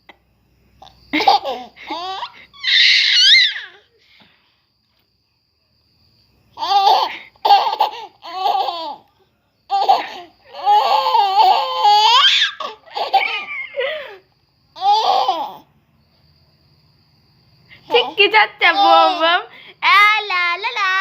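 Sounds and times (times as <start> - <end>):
high-pitched laughter: 12.6 - 14.2.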